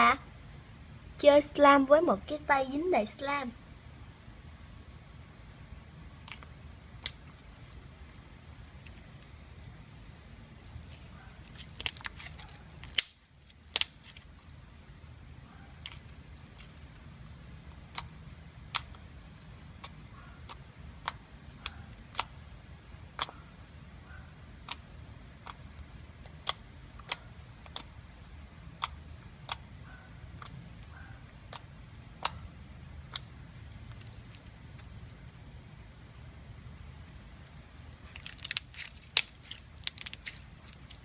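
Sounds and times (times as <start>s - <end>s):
low steady hum: 0.0s - 41.0s
slime clicking and popping: 6.2s - 7.2s, 11.5s - 14.2s, 17.7s - 19.0s, 19.8s - 22.4s, 23.1s - 23.4s, 24.6s - 28.0s, 28.7s - 29.7s, 30.4s - 32.4s, 33.0s - 34.2s, 38.2s - 41.0s.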